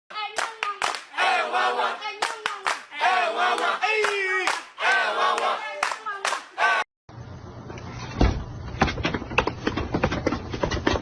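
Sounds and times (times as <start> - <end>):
person chanting: 0.1 - 6.9
hand claps: 0.3 - 1.2, 2.2 - 6.6.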